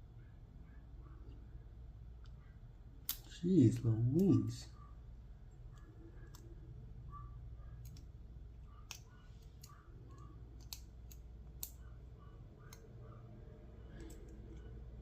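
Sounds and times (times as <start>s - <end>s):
faint steady low hum: 0.0s - 15.0s
faint metallic clicks of padlock parts: 8.8s - 12.0s.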